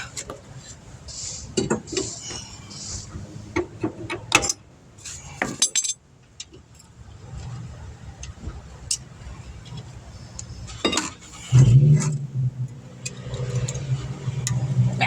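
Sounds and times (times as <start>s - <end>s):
metal tools clanking: 3.6s - 7.0s, 10.7s - 12.2s.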